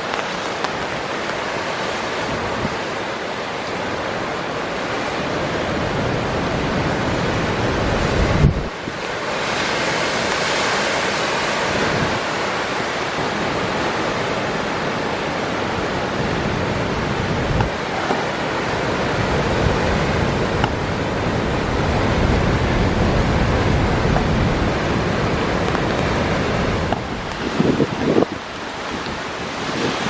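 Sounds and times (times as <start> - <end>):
wind buffeting microphone: 0.0 - 2.9, 5.5 - 10.4, 13.2 - 30.0
surf breaking on rocks: 0.0 - 30.0.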